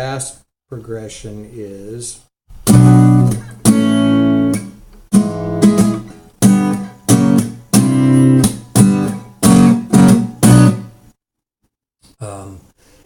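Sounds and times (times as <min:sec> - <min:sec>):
acoustic guitar strumming chords: 0:02.5 - 0:11.0.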